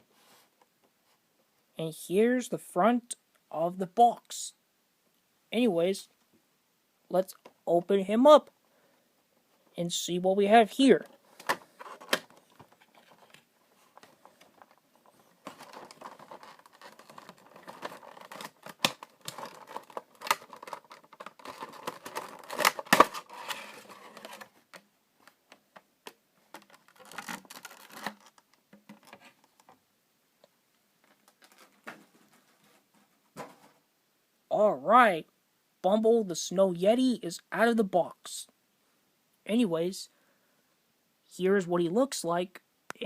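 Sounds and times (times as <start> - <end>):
packaging rustling and scraping: 11.2 - 25.4, 26.5 - 29.7, 31.0 - 33.8
packaging clicks: 15.4 - 24.8, 26.5 - 29.7.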